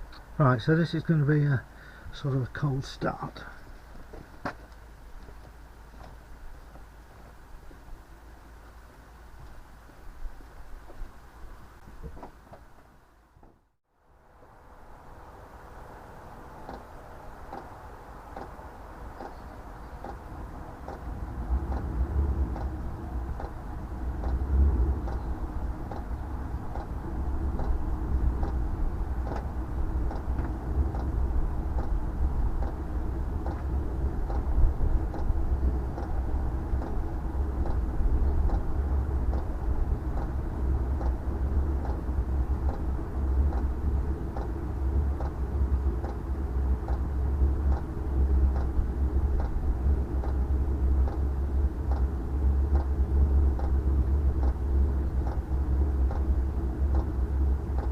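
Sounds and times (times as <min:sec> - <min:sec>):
air heater rumble: 0:00.0 - 0:57.9
fuel pump ticking: 0:18.3 - 0:57.9.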